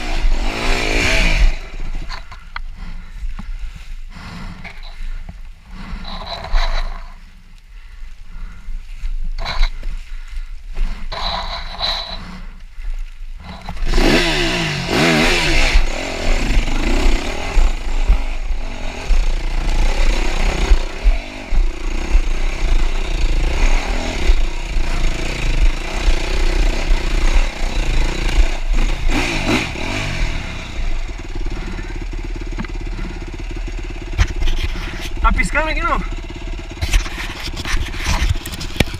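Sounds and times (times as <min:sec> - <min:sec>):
dirt bike engine revving: 0:00.0 - 0:07.4, 0:09.4 - 0:38.9.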